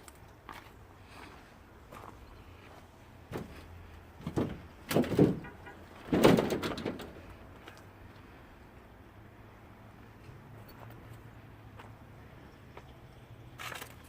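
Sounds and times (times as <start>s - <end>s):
knocks and thuds: 4.2s - 7.1s
loud bangs with rattle: 4.2s - 7.2s.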